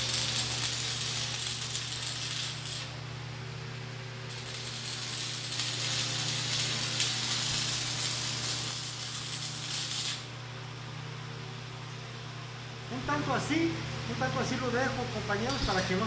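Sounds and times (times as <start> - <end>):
welding arc crackling: 0.0 - 3.1, 4.2 - 10.4, 15.4 - 16.0
steady low hum: 0.0 - 16.0.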